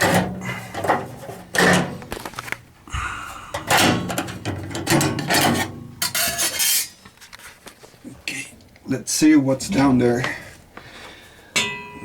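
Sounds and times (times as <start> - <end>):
sheet metal scraping: 0.0 - 2.3, 3.5 - 7.0.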